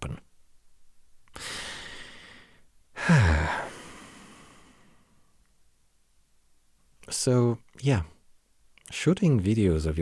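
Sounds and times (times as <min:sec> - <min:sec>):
man breathing in: 0:01.3 - 0:05.3
man sighing: 0:01.4 - 0:05.0.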